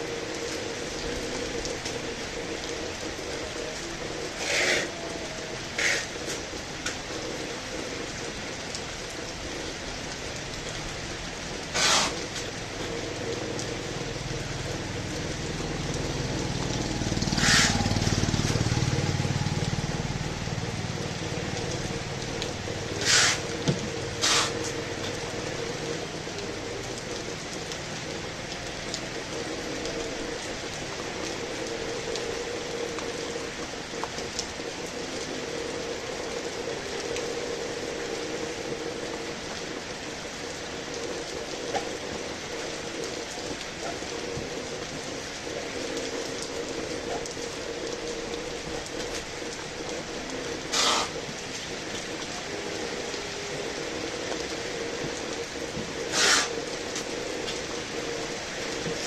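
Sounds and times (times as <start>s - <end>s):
heavy rain hissing: 0.0s - 59.0s
loud hissing bursts: 11.7s - 12.2s, 23.0s - 23.5s, 24.2s - 24.7s, 50.7s - 51.2s, 56.1s - 56.6s.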